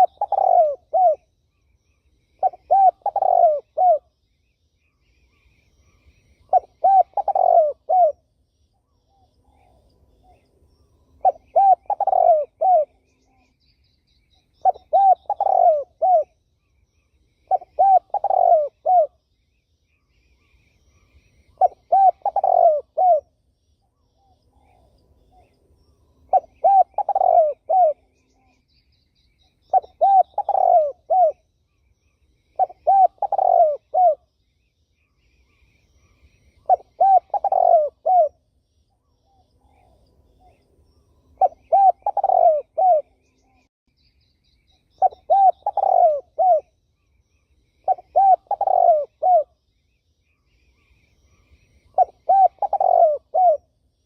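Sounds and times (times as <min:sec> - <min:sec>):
dove cooing: 0:00.0 - 0:01.3, 0:02.4 - 0:04.1, 0:06.4 - 0:08.2, 0:11.2 - 0:13.5, 0:14.6 - 0:16.4, 0:17.4 - 0:19.2, 0:20.4 - 0:23.3, 0:26.3 - 0:28.6, 0:29.7 - 0:31.5, 0:32.6 - 0:34.3, 0:36.0 - 0:38.4, 0:41.4 - 0:43.5, 0:45.0 - 0:46.7, 0:47.8 - 0:49.5, 0:51.3 - 0:53.7.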